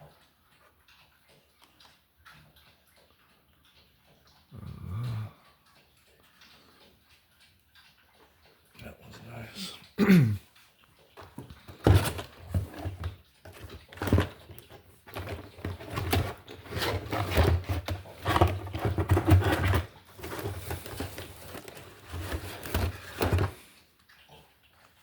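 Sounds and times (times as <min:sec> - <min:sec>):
packaging rustling and crackling: 0:11.2 - 0:23.6.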